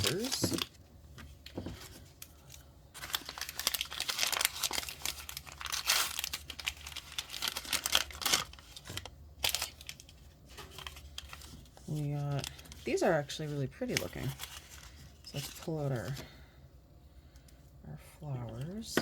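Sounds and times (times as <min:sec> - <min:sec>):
plastic packaging crinkling and tearing: 0:00.0 - 0:16.2.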